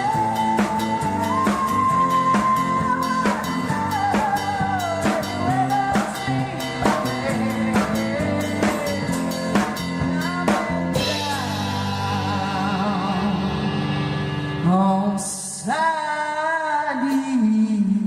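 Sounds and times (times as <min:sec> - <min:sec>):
drum kit beat: 0:00.0 - 0:14.3
bass guitar: 0:00.0 - 0:15.7
electric lead guitar: 0:00.0 - 0:16.4.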